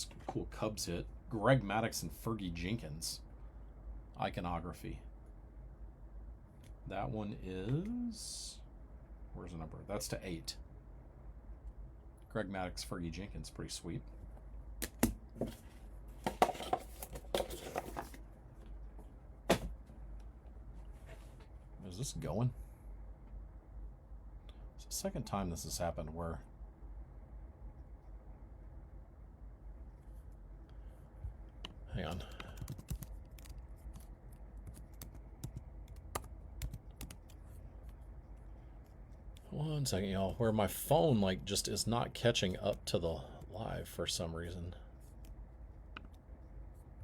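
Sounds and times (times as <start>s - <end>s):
trading cards rustling: 16.3s - 18.2s
fingers typing and tapping: 32.1s - 37.4s.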